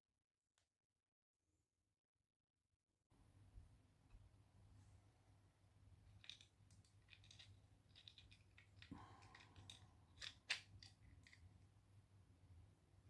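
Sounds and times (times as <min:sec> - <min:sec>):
small clicks of hard parts: 0:06.2 - 0:11.4.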